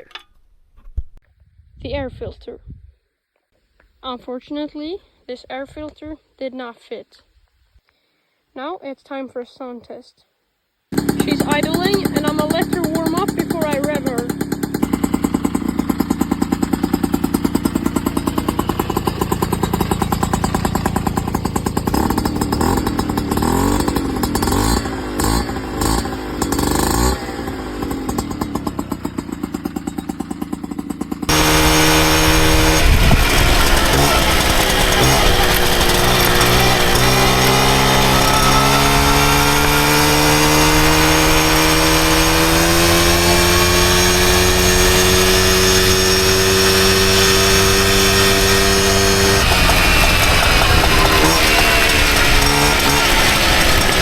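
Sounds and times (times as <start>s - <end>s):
moped engine idling and revving: 10.9s - 54.0s.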